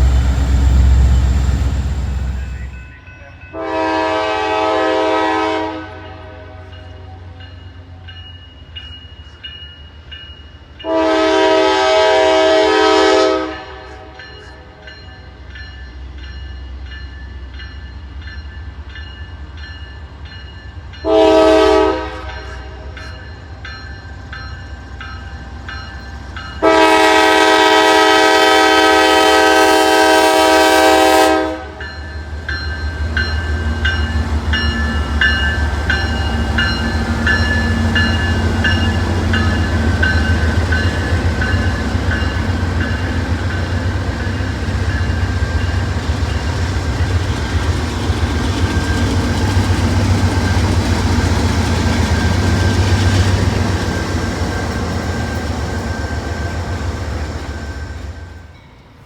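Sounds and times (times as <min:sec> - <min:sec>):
locomotive air horn blasts: 0:03.6 - 0:06.6, 0:10.8 - 0:14.2, 0:21.0 - 0:23.0, 0:26.6 - 0:31.8.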